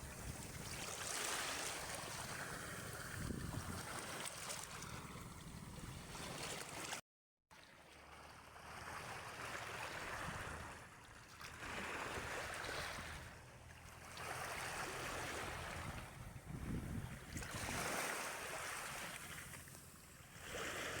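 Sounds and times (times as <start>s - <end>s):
small waves washing onto shore: 0.0s - 7.0s, 8.0s - 21.0s.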